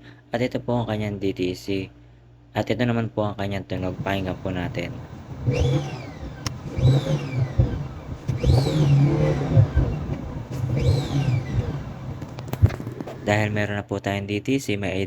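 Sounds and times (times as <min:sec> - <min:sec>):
car engine revving: 0:03.8 - 0:13.7.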